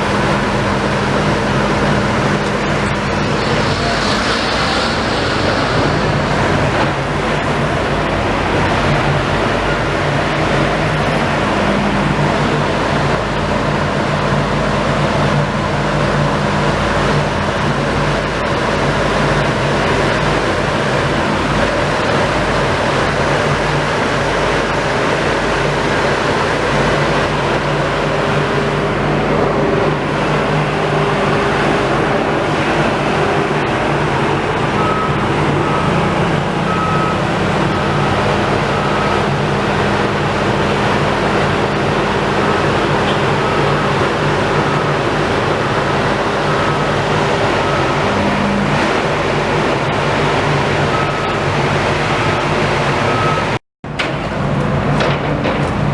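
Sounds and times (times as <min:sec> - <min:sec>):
heavy vehicle engine running: 0:00.0 - 0:55.9
street traffic noise: 0:00.0 - 0:55.9
reversing alarm beeping: 0:00.3 - 0:16.3, 0:25.4 - 0:53.6.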